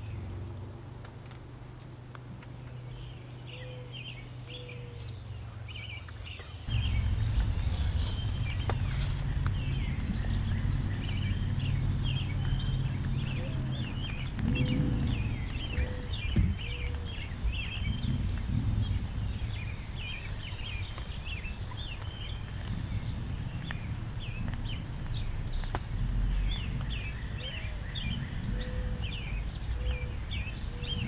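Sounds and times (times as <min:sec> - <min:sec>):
songbirds chirping: 0:00.0 - 0:31.0
steady low rumble: 0:06.7 - 0:31.0.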